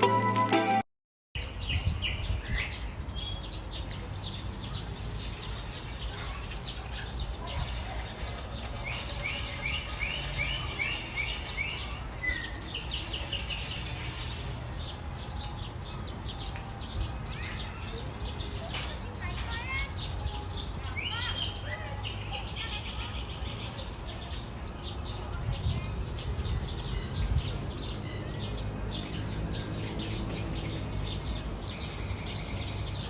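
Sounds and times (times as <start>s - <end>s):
birds chirping and singing: 1.4s - 33.0s.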